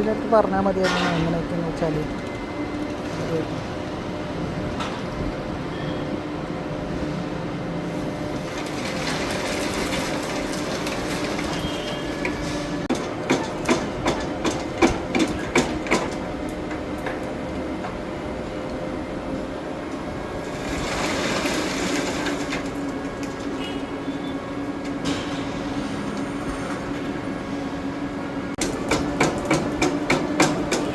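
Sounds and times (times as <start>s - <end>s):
sharp knocks: 12.9s - 16.2s, 28.6s - 30.9s.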